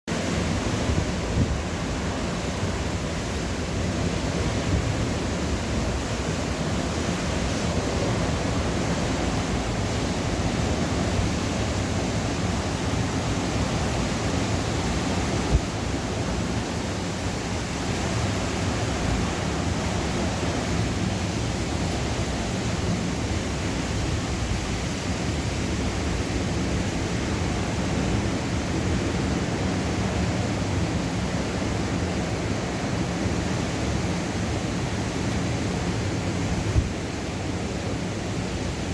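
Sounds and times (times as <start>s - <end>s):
storm wind: 0.1s - 38.9s
wind buffeting microphone: 0.2s - 30.3s.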